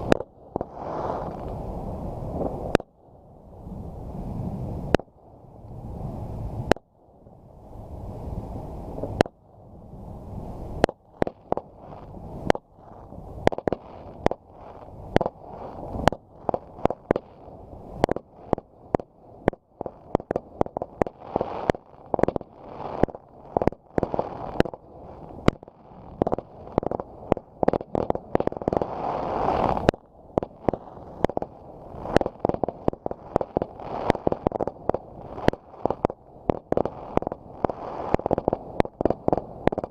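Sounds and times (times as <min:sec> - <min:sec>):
fireworks bangs and cracks: 0:00.0 - 0:01.7, 0:10.7 - 0:39.9.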